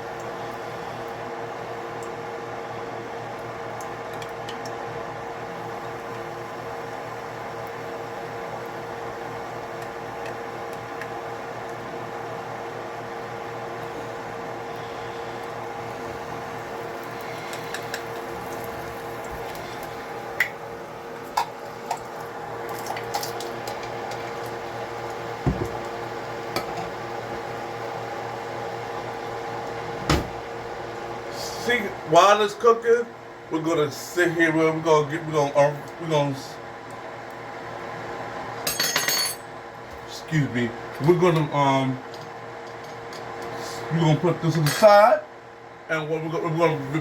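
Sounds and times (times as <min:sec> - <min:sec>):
appliance hum: 0:00.0 - 0:47.0
kitchen cooking sounds: 0:00.1 - 0:32.9.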